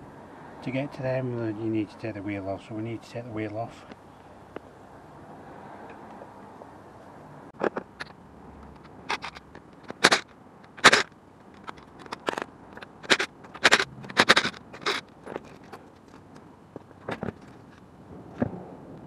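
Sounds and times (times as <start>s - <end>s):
hand tools clattering and scraping: 8.7s - 17.8s.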